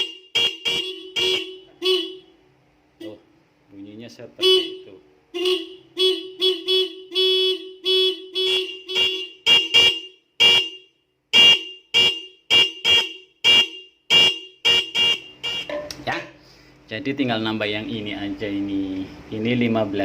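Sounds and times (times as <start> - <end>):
dual-tone motorcycle horn beeps: 0.0 - 2.4, 4.4 - 16.0.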